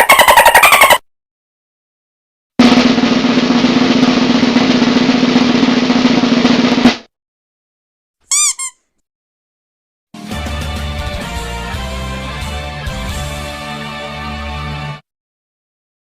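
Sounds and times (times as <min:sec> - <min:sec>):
snare drum roll: 0:02.6 - 0:07.1
short chirping tones: 0:08.3 - 0:08.8.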